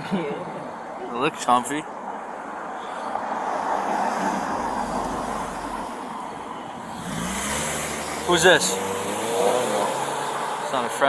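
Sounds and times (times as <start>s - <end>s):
vehicle passing: 2.9s - 11.0s
engine hum: 4.2s - 11.0s.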